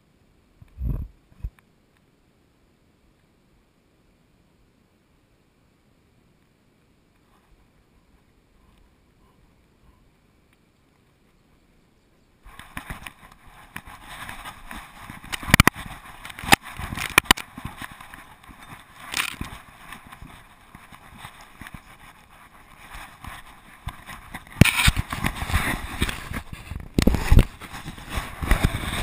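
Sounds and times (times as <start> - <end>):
camera housing rustling and scraping: 12.5 - 29.0.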